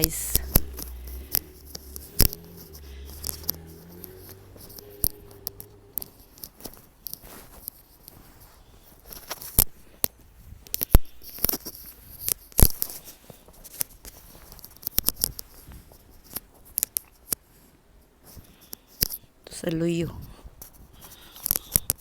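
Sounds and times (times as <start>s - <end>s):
footsteps crunching in snow: 5.6s - 10.6s.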